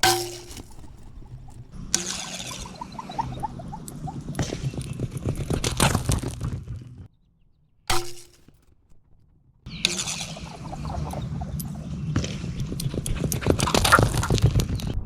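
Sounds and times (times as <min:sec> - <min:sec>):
whistling arrow warbling in flight: 0:00.1 - 0:06.4, 0:09.7 - 0:15.0.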